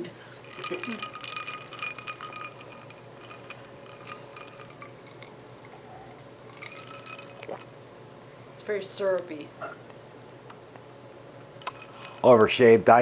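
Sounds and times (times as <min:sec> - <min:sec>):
soda fizzing over ice: 0:00.4 - 0:04.8, 0:06.5 - 0:07.7
ice clinking in glass: 0:00.4 - 0:05.4, 0:06.5 - 0:07.7, 0:11.6 - 0:12.4.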